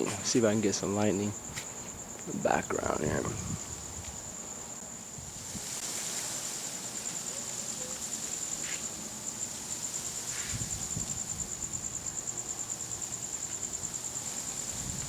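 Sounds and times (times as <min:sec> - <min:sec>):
soft wind rushing: 0:00.0 - 0:05.9, 0:10.3 - 0:12.2
crickets trilling: 0:00.0 - 0:15.0.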